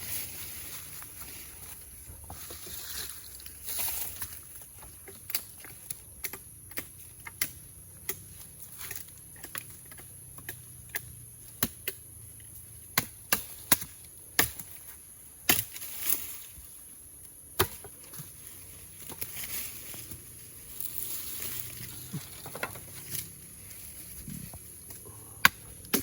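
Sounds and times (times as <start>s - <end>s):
wood chopping: 9.4s - 12.0s, 12.9s - 14.8s, 15.5s - 15.8s, 17.6s - 18.4s, 24.8s - 26.0s.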